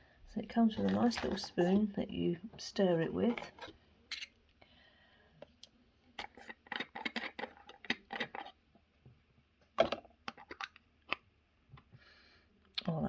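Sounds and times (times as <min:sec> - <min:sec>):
cosmetic jar clicks and taps: 0:06.2 - 0:08.5.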